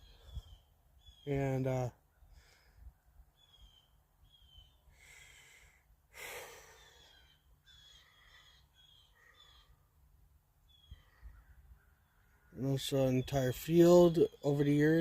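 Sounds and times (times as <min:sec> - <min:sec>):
bird whistling calls: 0:03.4 - 0:04.8, 0:06.8 - 0:09.8.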